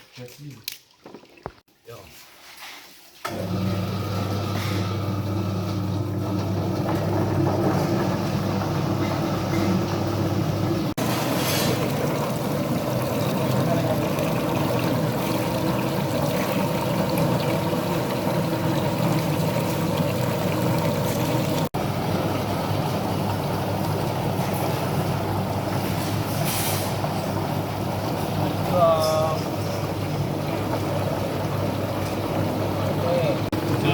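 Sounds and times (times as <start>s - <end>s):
machine churning: 3.3s - 33.9s
peeling machine motor hum: 11.8s - 22.0s.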